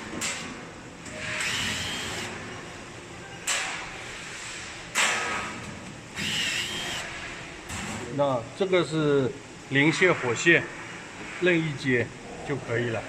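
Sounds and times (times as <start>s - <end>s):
power drill whining: 1.4s - 2.3s, 6.2s - 7.1s.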